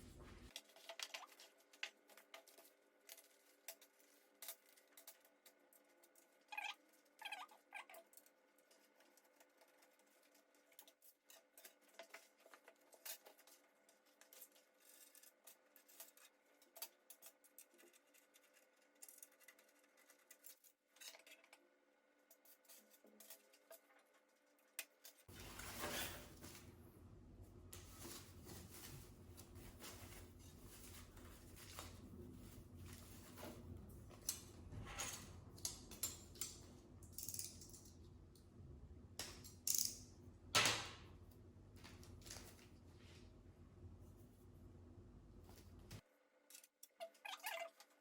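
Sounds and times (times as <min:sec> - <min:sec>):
faint steady hum: 0:00.0 - 0:00.7
small metal parts clicking: 0:35.1 - 0:38.0, 0:39.2 - 0:40.1.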